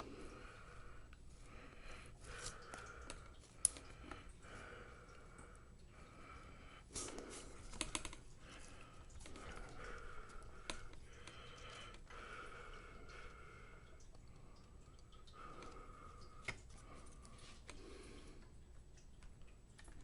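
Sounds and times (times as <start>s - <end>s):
plastic laptop parts clicking: 7.7s - 8.2s.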